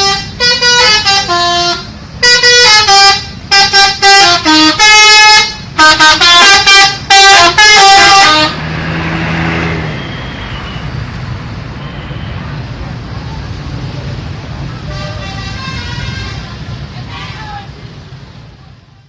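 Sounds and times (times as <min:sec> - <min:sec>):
multi-tone bus horn tune: 0:00.0 - 0:09.1, 0:14.8 - 0:16.6.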